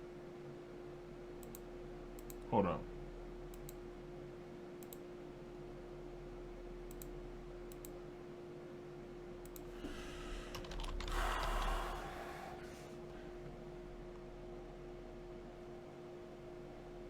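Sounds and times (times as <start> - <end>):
steady electrical hum: 0.0 - 17.0
computer keys clicking: 1.4 - 2.4, 3.5 - 3.8, 4.8 - 5.0, 6.9 - 8.0, 9.4 - 12.0.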